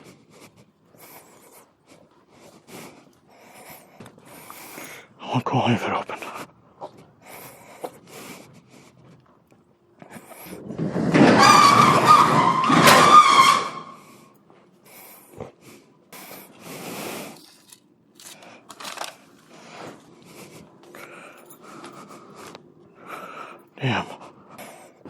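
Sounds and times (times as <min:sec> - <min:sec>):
metal door scraping and squealing: 0:10.6 - 0:14.1
clicks and rustles of handling: 0:17.3 - 0:20.0.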